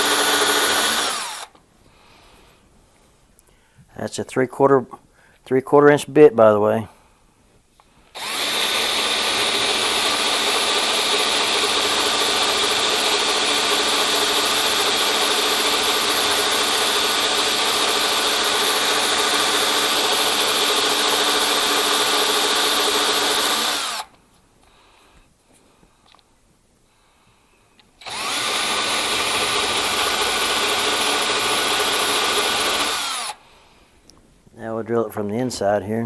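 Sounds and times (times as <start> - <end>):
power drill boring wood: 0.0 - 1.6, 8.2 - 24.1, 28.0 - 33.4.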